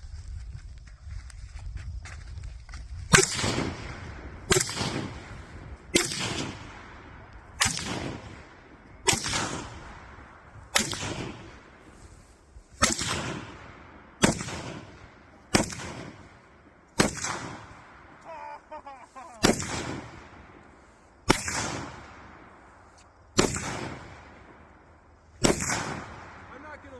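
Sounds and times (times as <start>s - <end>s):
rifle shots echoing: 3.1s - 11.8s, 12.8s - 18.2s, 19.3s - 20.6s, 21.2s - 22.6s, 23.4s - 24.6s, 25.4s - 26.9s.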